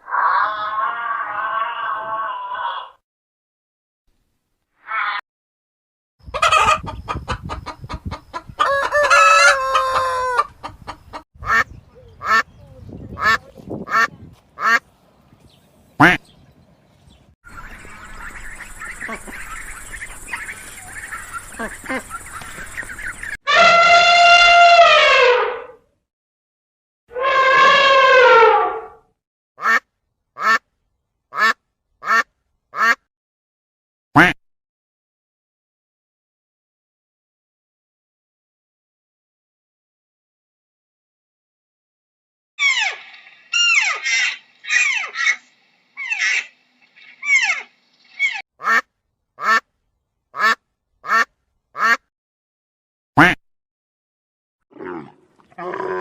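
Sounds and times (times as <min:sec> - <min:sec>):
short chicken calls: 0:06.2 - 0:11.6, 0:17.5 - 0:25.8, 0:42.6 - 0:48.8
chickens clucking: 0:06.2 - 0:14.2, 0:17.5 - 0:23.4
rooster crowing: 0:08.6 - 0:10.5.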